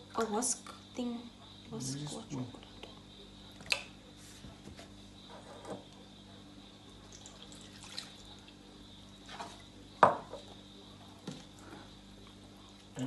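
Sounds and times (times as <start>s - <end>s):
faint steady hum: 0.0s - 13.0s
liquid drips: 7.0s - 8.6s.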